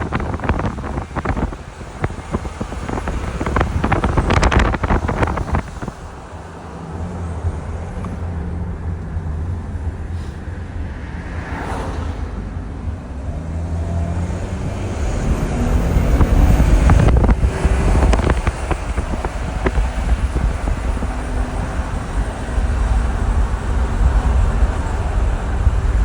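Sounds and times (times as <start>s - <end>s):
car engine droning: 0.0s - 26.0s
rising whoosh: 9.4s - 22.0s.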